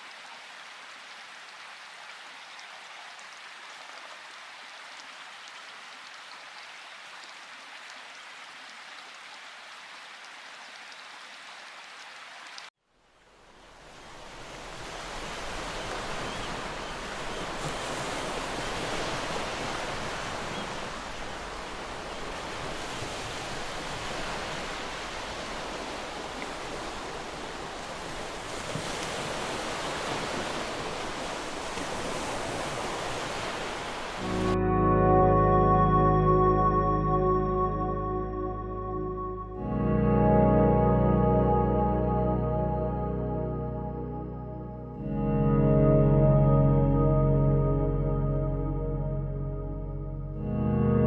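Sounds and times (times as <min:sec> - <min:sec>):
deep rush of water: 0:00.0 - 0:34.6.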